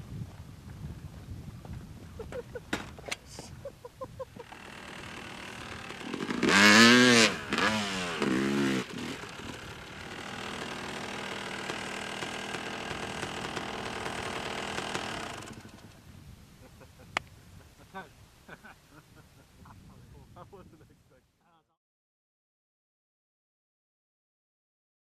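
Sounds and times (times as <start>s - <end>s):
dirt bike engine revving: 4.3s - 16.0s.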